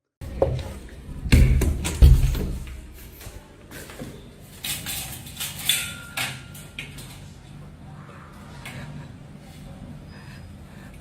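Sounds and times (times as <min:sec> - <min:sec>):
knocks and rustling: 0:00.3 - 0:06.5
heavy thump: 0:01.2 - 0:03.0.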